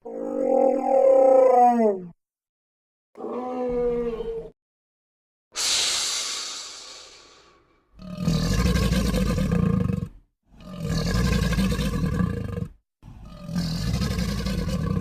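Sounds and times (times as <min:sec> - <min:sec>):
deep rasping creature roars: 0:08.0 - 0:15.0.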